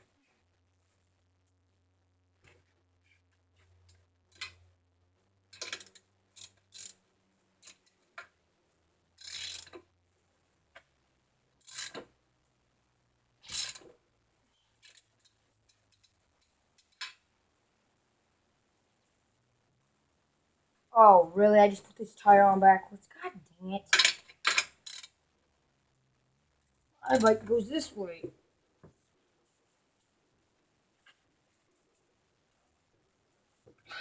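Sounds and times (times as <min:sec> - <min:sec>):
hands scraping and rubbing bike tire: 0:09.2 - 0:09.8.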